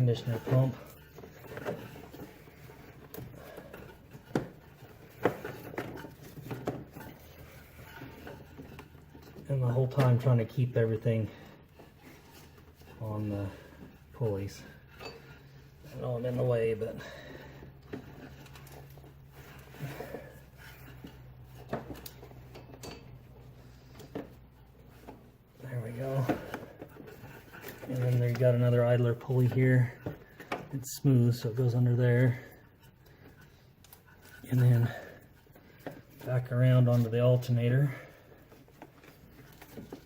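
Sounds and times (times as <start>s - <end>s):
rubber belt rubbing on pulleys: 0.0s - 40.0s
rubber belt rubbing: 11.3s - 16.5s.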